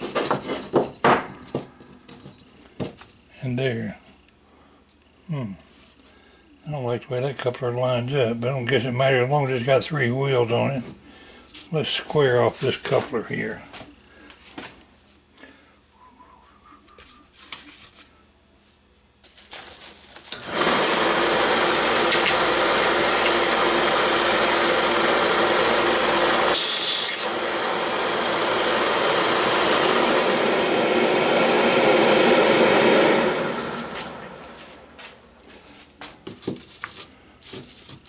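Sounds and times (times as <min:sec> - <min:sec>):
power tool cutting wood: 0:20.3 - 0:34.9.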